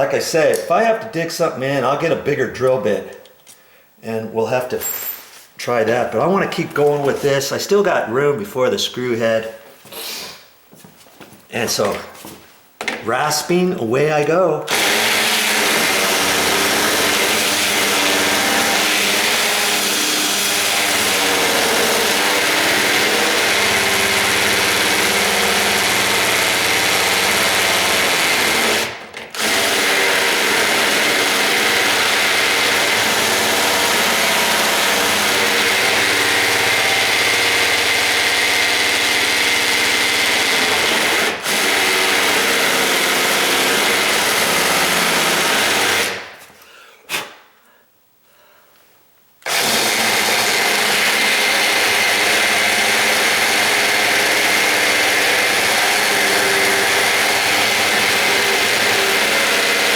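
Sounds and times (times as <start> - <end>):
power drill grinding metal: 14.7 - 46.3, 49.5 - 59.9.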